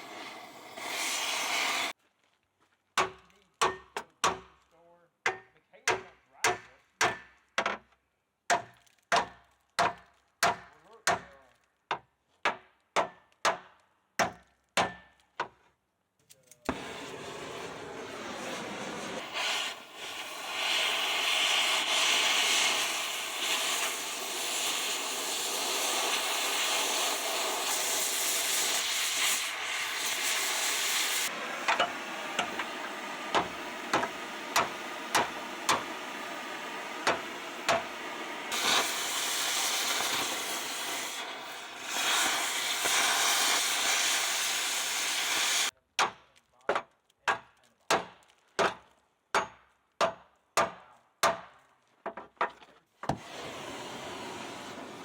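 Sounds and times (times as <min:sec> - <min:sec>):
cutting torch hissing: 0:00.0 - 0:02.0, 0:16.7 - 0:45.7, 0:53.1 - 0:55.0.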